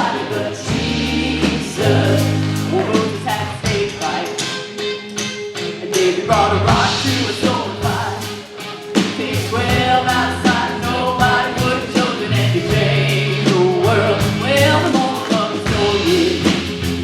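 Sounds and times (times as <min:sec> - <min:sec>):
band playing worship music: 0:00.0 - 0:17.0
voices singing: 0:00.0 - 0:17.0
drum beat: 0:06.7 - 0:17.0.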